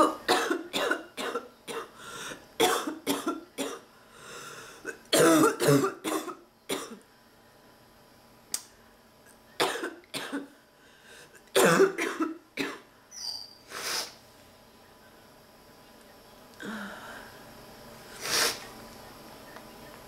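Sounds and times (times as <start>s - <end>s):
person coughing in barking fits: 0.0s - 1.9s, 2.6s - 3.8s, 4.9s - 7.0s, 9.6s - 10.5s, 11.6s - 12.9s.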